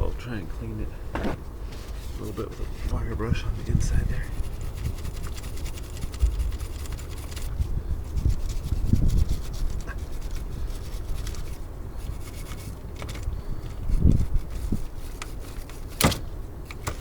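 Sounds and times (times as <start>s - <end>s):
wire brush scratching metal: 4.2s - 7.5s, 8.1s - 17.0s.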